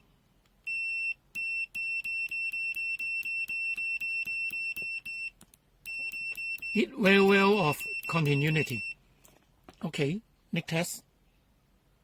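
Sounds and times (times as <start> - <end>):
multimeter beeper pulsing: 0.7 - 9.0.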